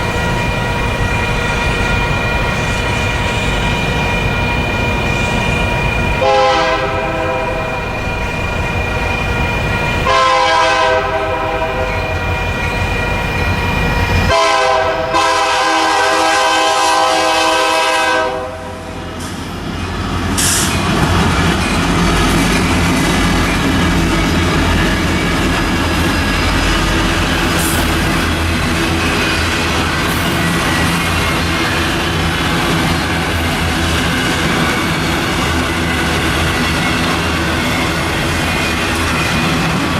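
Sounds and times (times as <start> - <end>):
train rumbling past on rails: 0.0 - 39.9
locomotive air horn blasts: 6.2 - 7.8, 10.0 - 12.1, 14.3 - 19.0.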